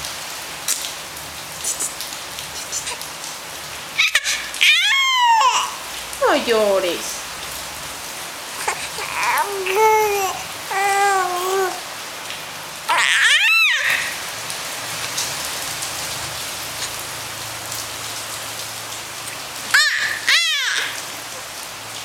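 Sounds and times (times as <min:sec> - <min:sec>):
baby crying: 0:02.6 - 0:03.1, 0:04.0 - 0:05.8, 0:08.6 - 0:11.9, 0:12.9 - 0:14.2, 0:19.7 - 0:21.5.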